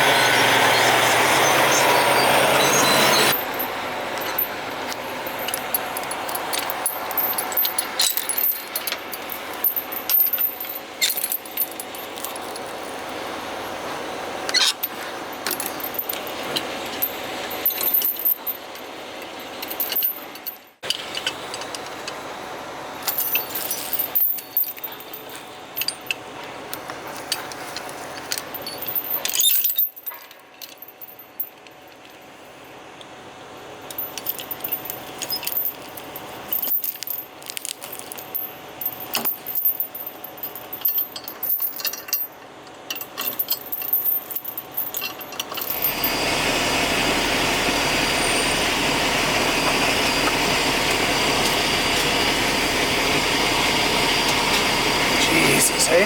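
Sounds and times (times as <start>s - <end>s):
metal clinking and jangling: 3.3s - 13.1s, 14.5s - 21.8s, 23.0s - 32.2s, 33.9s - 46.2s.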